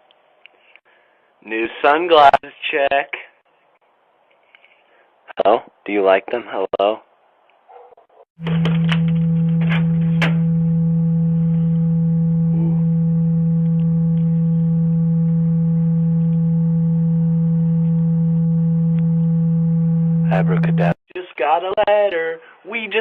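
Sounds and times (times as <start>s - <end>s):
steady low-pitched hum: 8.4s - 21.0s
faint higher tones: 8.8s - 21.0s.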